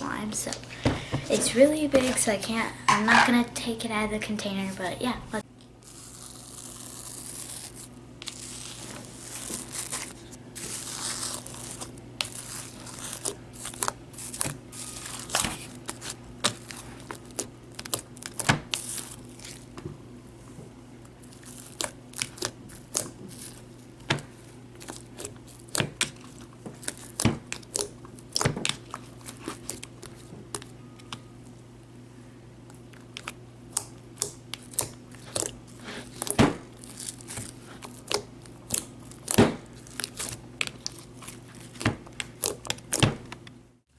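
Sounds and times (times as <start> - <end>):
steady low hum: 0.0 - 43.9
slime squishing with pops: 10.7 - 19.2, 21.4 - 31.2, 33.0 - 43.4.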